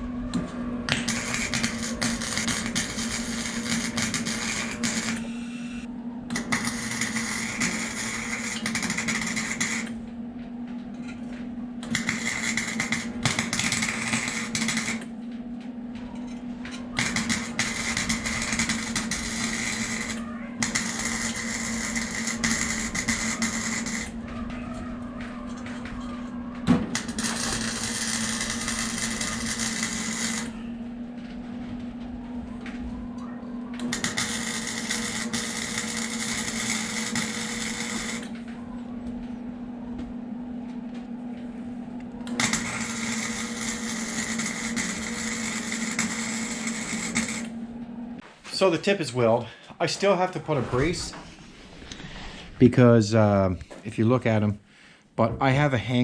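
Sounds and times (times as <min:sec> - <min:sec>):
welding arc crackle: 0:00.0 - 0:10.0, 0:11.8 - 0:15.1, 0:16.8 - 0:26.0, 0:26.7 - 0:30.8, 0:33.7 - 0:38.5, 0:42.2 - 0:47.6
steady electrical hum: 0:00.0 - 0:56.0.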